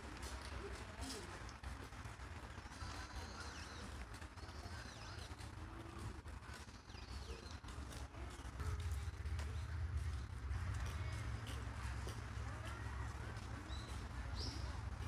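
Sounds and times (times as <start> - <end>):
low steady rumble: 8.4 - 15.0.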